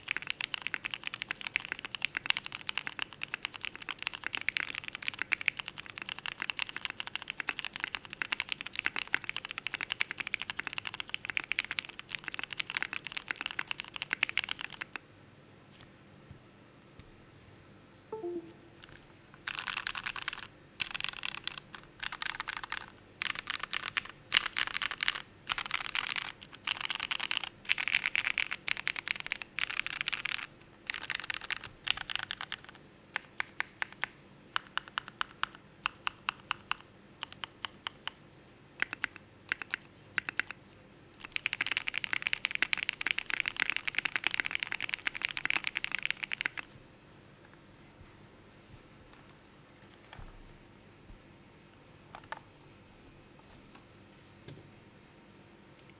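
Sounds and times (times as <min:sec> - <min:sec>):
mechanical keyboard typing: 0:00.0 - 0:15.0, 0:18.2 - 0:38.2, 0:38.8 - 0:40.6, 0:41.2 - 0:46.7.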